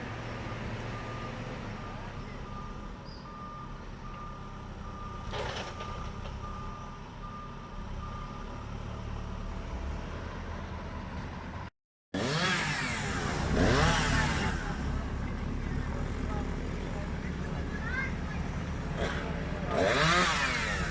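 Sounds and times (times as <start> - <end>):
truck reversing alarm beeping: 0.1 - 9.8, 19.1 - 20.9
truck engine running: 12.6 - 20.9.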